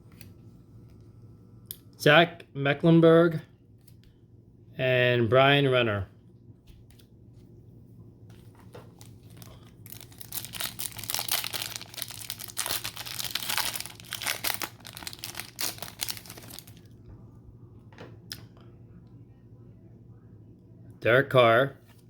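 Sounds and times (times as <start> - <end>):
wrapper tearing and crinkling: 8.9 - 16.9.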